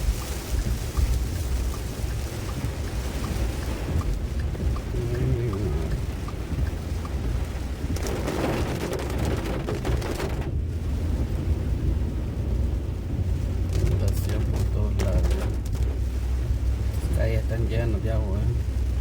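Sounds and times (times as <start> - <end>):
heavy rain: 0.0 - 19.0
steady low rumble: 0.0 - 19.0
wind: 0.0 - 19.0.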